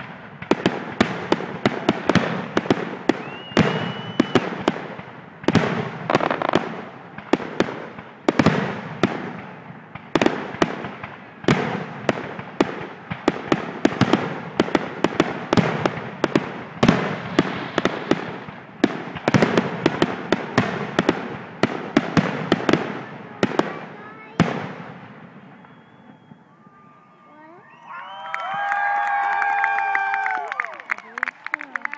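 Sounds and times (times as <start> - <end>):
fireworks booming and crackling: 0.0 - 26.9.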